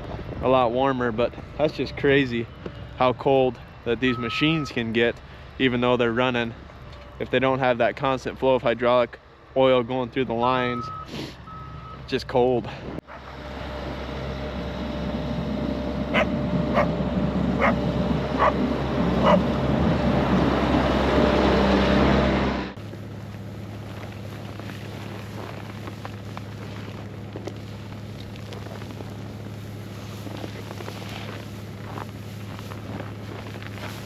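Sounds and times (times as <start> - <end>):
steady engine hum: 0.0 - 34.0
vehicle engine running: 12.7 - 34.0
dog barking: 16.1 - 16.9, 17.6 - 17.8, 18.4 - 18.6, 19.2 - 19.5.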